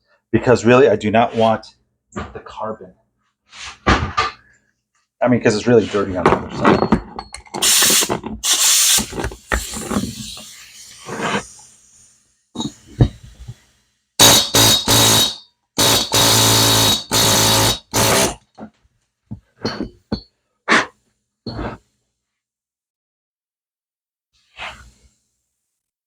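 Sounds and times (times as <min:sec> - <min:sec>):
buzzing power tool: 0:07.6 - 0:11.4, 0:14.2 - 0:18.4.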